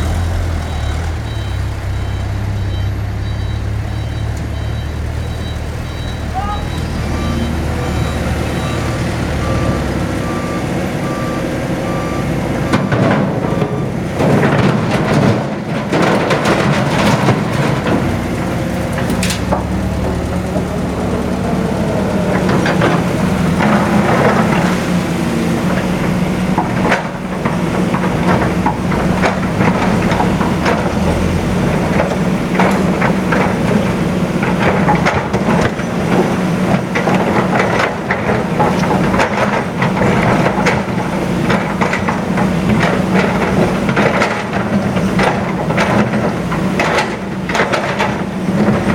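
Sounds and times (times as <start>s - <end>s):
diesel engine running: 0.0s - 48.9s
knocks and clatter: 12.0s - 21.4s, 22.2s - 48.9s.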